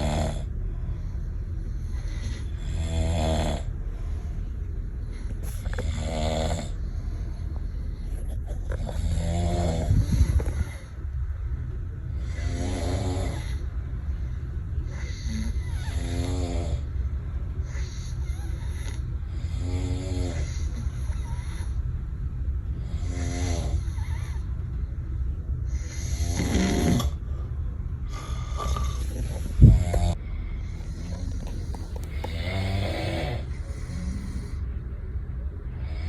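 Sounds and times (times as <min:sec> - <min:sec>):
person snoring heavily: 0:00.0 - 0:00.5, 0:01.9 - 0:03.7, 0:05.1 - 0:06.8, 0:08.3 - 0:10.9, 0:12.2 - 0:13.6, 0:14.9 - 0:16.9, 0:17.7 - 0:21.8, 0:22.8 - 0:24.4, 0:25.7 - 0:27.2, 0:28.1 - 0:34.6
steady low hum: 0:00.0 - 0:36.0.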